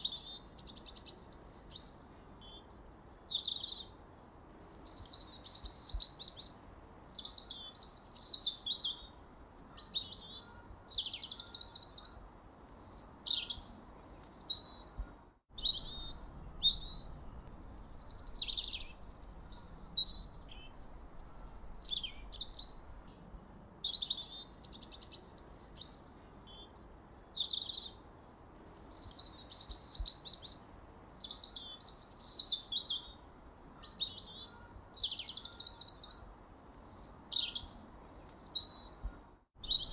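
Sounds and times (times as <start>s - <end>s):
faint steady hiss: 0.0s - 35.4s, 36.0s - 39.9s
songbirds chirping: 0.0s - 39.9s.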